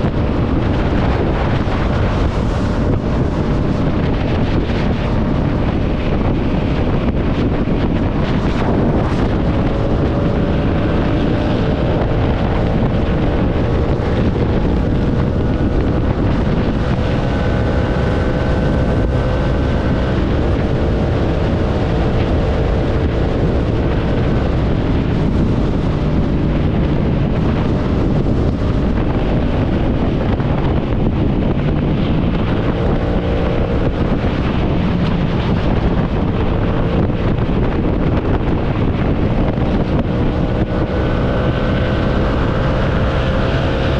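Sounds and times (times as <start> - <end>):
motorcycle engine running: 0.0 - 43.9
wind on microphone: 0.0 - 43.9.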